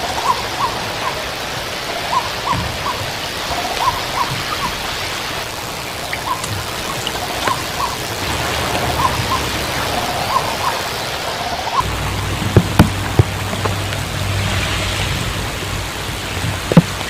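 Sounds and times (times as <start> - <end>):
bird hooting calls: 0.0 - 12.2
steady rushing hiss: 0.0 - 17.0.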